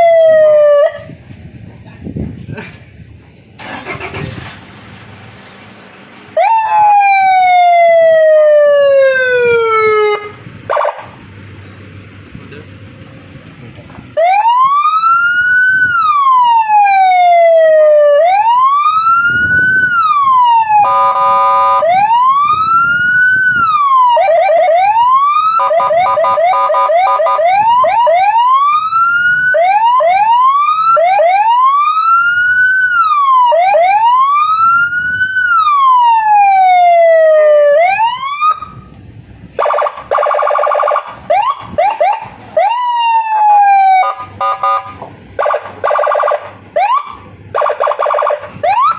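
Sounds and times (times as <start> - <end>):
electronic siren wailing and yelping: 0.0 - 1.1, 6.4 - 11.1, 14.2 - 38.8, 39.6 - 48.9
rough stuttering siren buzz: 44.0 - 46.5.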